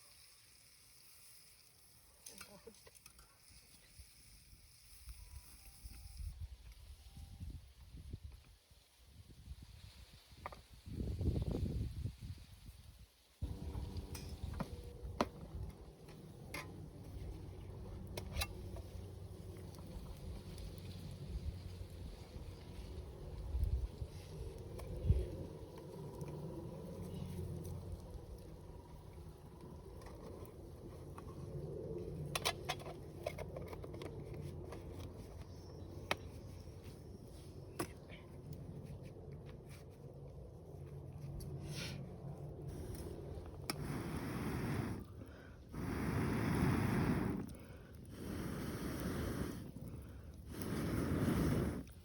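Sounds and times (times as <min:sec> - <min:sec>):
fire crackling and popping: 0:13.4 - 0:31.1, 0:42.7 - 0:52.0
wood fire rumbling: 0:13.4 - 0:32.4, 0:42.4 - 0:52.0.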